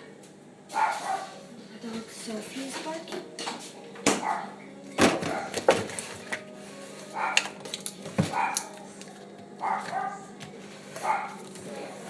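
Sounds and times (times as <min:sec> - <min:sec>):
dog barking: 0:00.7 - 0:01.4, 0:04.2 - 0:04.6, 0:07.2 - 0:07.4, 0:08.3 - 0:08.7, 0:09.6 - 0:10.3, 0:11.0 - 0:11.4.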